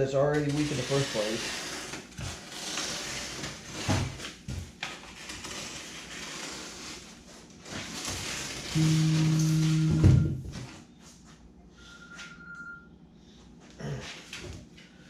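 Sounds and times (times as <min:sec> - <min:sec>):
paper rustling and scraping: 0:00.6 - 0:09.8.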